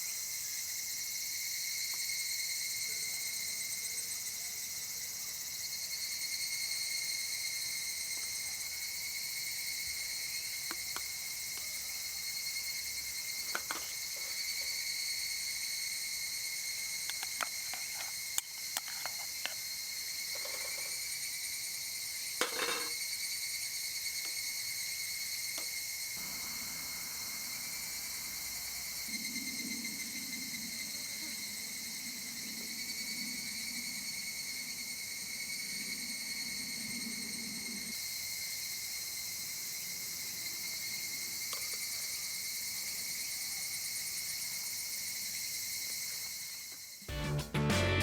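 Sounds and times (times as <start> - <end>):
insects shrilling: 0.0 - 47.1
guitar music: 47.1 - 48.0.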